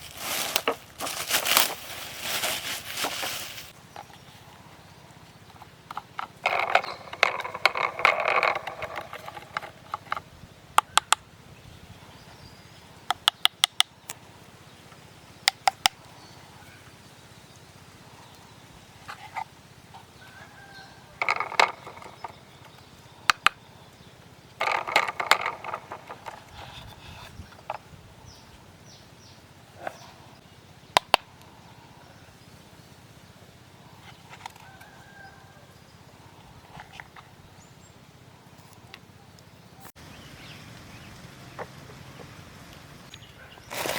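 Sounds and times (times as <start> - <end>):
packaging crinkling: 0.0 - 3.8.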